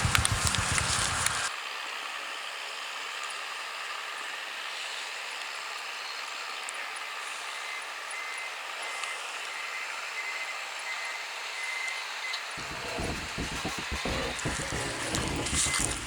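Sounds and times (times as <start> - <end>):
background music: 12.6 - 16.0.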